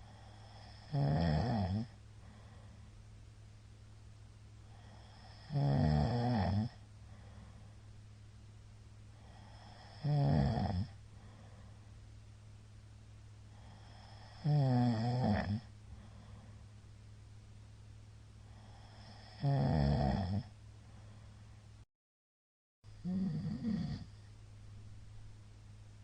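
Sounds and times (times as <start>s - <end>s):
quiet breathing: 0.0s - 19.6s, 20.3s - 21.8s
man snoring loudly: 0.1s - 2.0s, 4.7s - 6.8s, 9.2s - 11.0s, 13.6s - 15.7s, 18.5s - 20.5s, 23.0s - 24.1s.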